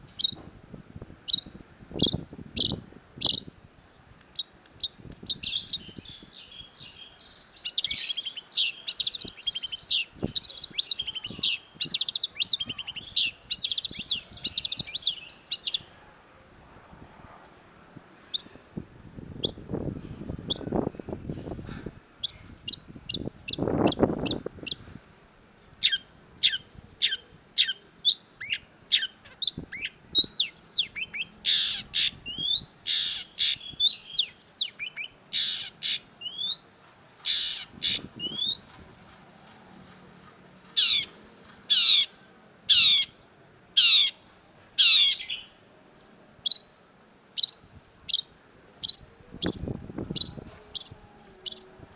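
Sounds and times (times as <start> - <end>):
shrike calling: 1.3 - 16.0, 22.2 - 38.8, 40.7 - 43.2, 44.8 - 45.6, 47.4 - 51.9.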